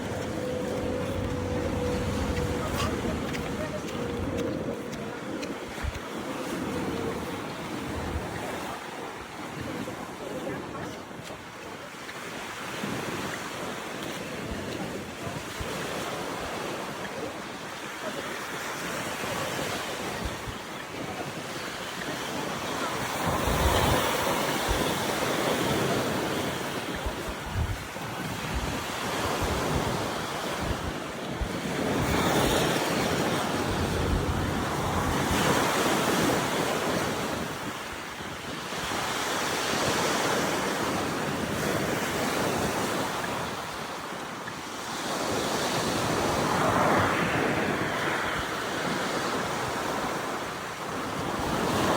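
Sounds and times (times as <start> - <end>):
wind buffeting microphone: 0.0 - 11.8, 18.8 - 44.0
waves breaking on a beach: 0.0 - 51.9.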